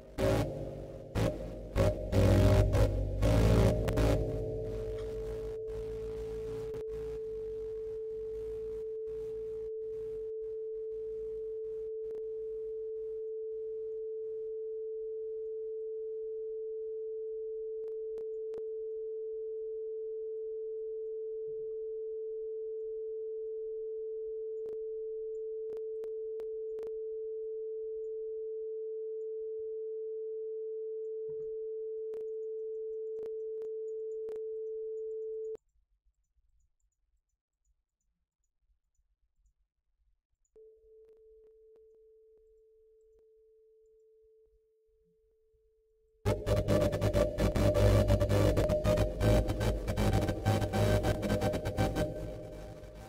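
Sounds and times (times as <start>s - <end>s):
synthesizer steady pure tone: 0.0s - 35.6s, 46.3s - 53.0s.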